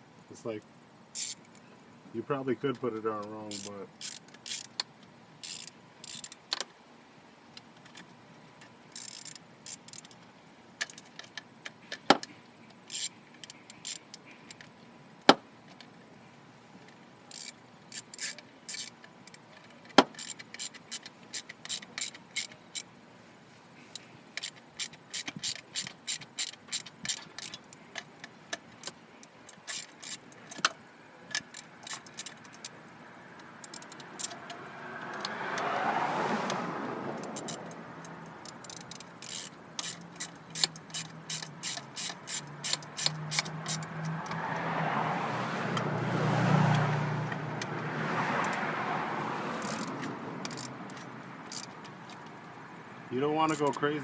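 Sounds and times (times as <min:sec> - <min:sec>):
ratchet wrench clicking: 0:01.1 - 0:01.6, 0:02.7 - 0:06.7, 0:07.9 - 0:10.2, 0:10.8 - 0:14.7, 0:17.3 - 0:22.9, 0:23.9 - 0:35.7, 0:37.2 - 0:44.7, 0:49.5 - 0:52.6.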